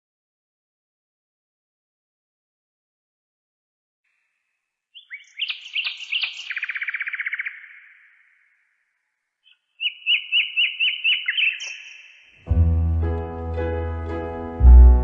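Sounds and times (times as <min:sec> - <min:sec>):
songbird singing: 0:04.9 - 0:12.6.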